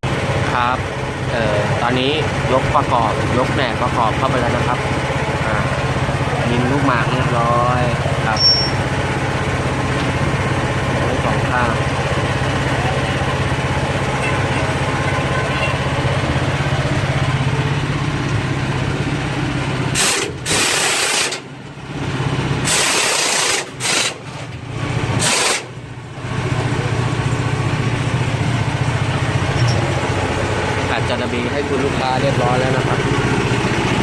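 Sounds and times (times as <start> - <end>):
engine idling: 0.0 - 34.0
loud bursts of hissing: 20.0 - 21.5, 22.6 - 24.2, 25.2 - 25.8.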